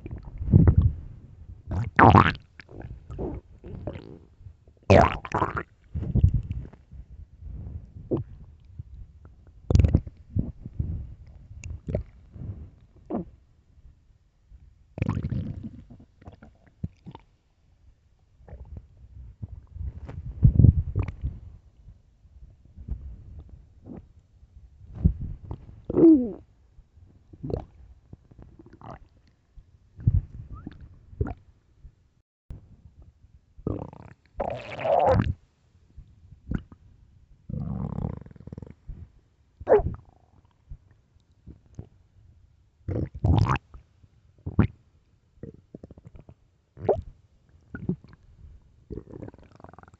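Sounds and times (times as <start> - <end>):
stomach growling: 0.0 - 1.0, 1.7 - 4.3, 4.9 - 6.8, 7.9 - 12.3, 13.0 - 13.4, 15.0 - 17.3, 18.4 - 21.4, 23.4 - 24.1, 25.0 - 26.5, 27.4 - 29.2, 30.0 - 31.4, 33.6 - 35.4, 36.5 - 36.8, 37.5 - 40.9, 42.9 - 43.8, 45.4 - 47.1, 47.7 - 48.3, 48.9 - 49.9.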